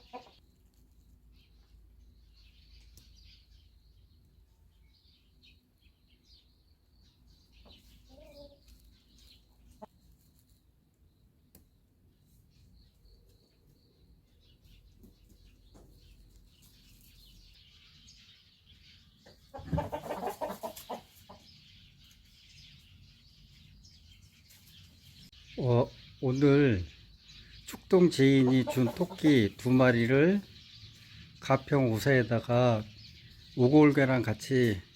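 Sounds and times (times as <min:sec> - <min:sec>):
loud chicken clucking: 0:00.0 - 0:00.4, 0:19.2 - 0:21.6, 0:28.2 - 0:29.6
faint small-bird chirping: 0:00.0 - 0:34.9.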